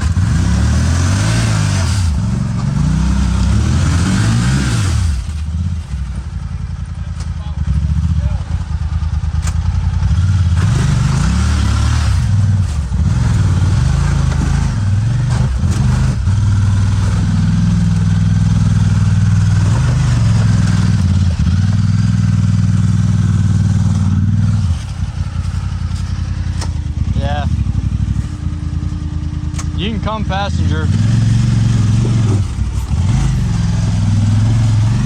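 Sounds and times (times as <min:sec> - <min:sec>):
off-road vehicle engine revving: 0:00.0 - 0:35.0.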